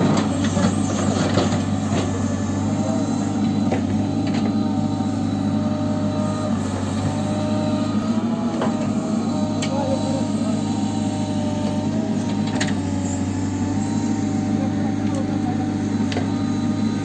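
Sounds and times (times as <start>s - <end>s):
engine running steadily: 0.0s - 17.0s.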